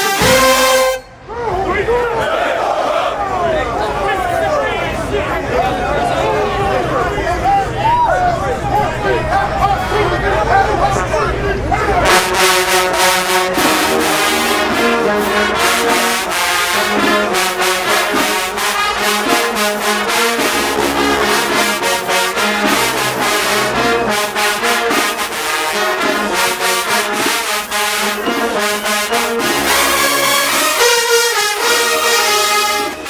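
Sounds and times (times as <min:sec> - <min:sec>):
marching band playing: 0:00.0 - 0:03.1, 0:03.8 - 0:33.0
trombones and trumpets: 0:00.0 - 0:03.1, 0:08.3 - 0:33.0.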